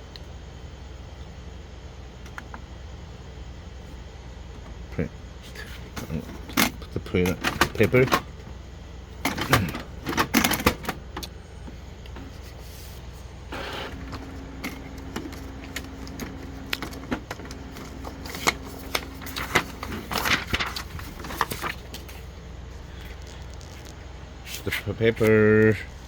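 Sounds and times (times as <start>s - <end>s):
printer motor humming: 3.6s - 24.3s
printer mechanism clicking: 9.2s - 11.3s, 13.9s - 21.5s.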